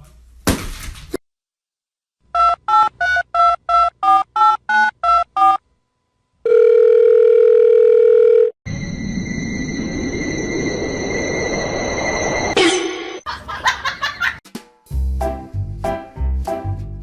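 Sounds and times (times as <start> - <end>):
steady phone tone: 6.4 - 12.0
steady high tones: 8.7 - 13.3.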